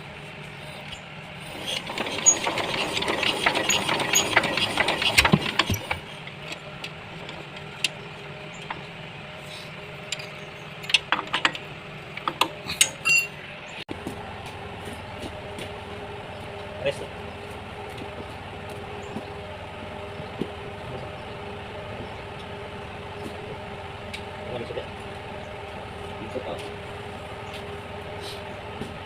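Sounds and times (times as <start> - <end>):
steady low hum: 5.1 - 29.0
metal clattering and clinking: 10.1 - 13.4.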